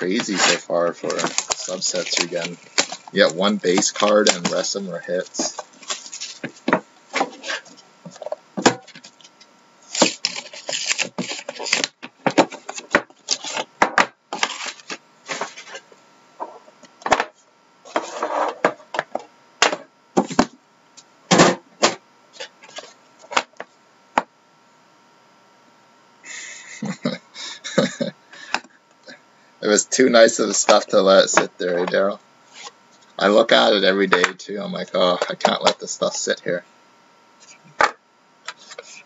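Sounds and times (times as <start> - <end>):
card packs clicking and tapping: 0.1 - 4.7
packaging rustling: 0.1 - 7.8, 8.7 - 13.7, 14.4 - 15.8.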